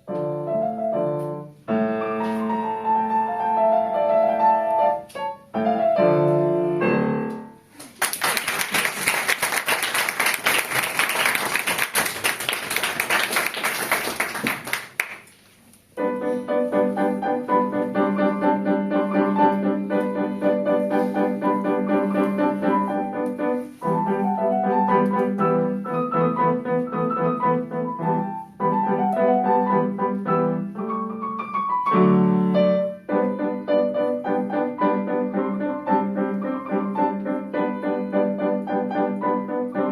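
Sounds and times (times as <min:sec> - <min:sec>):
solo acoustic piano: 0:00.0 - 0:07.8, 0:16.0 - 0:39.9
audience applauding: 0:07.8 - 0:15.3.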